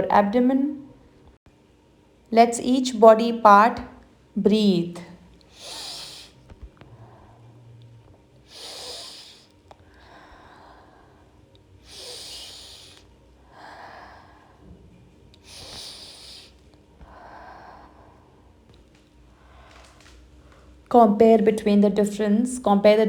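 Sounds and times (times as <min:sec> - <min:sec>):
person breathing deeply: 0:05.5 - 0:18.6.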